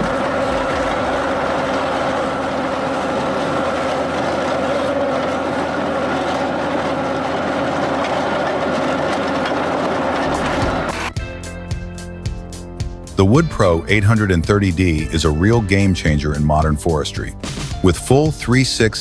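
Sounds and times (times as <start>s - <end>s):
high machine whine: 0.0s - 11.3s, 13.2s - 16.4s
heavy machinery engine: 0.0s - 11.5s, 13.1s - 19.0s.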